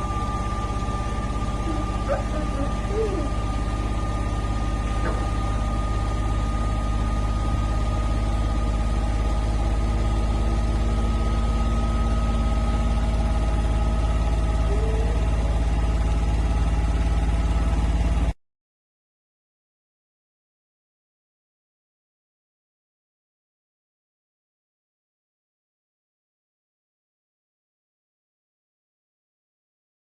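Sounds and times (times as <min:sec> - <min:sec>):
low machine hum: 0:00.0 - 0:18.4.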